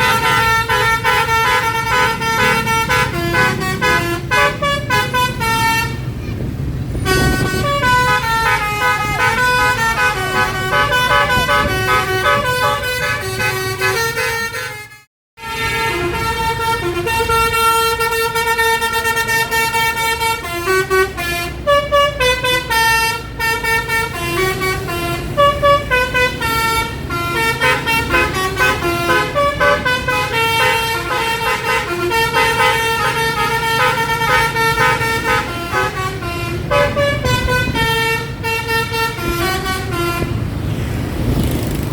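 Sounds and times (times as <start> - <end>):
multi-tone bus horn melody: 0.0 - 40.8
engine and road noise: 0.0 - 41.9.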